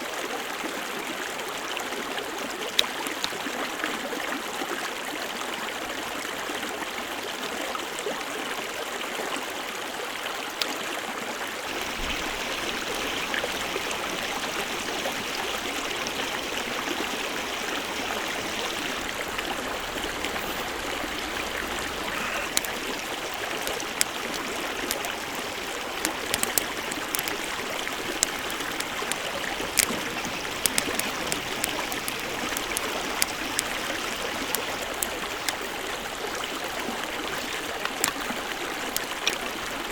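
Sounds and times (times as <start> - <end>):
flowing water: 0.0 - 39.9
sharp pops: 22.0 - 35.7.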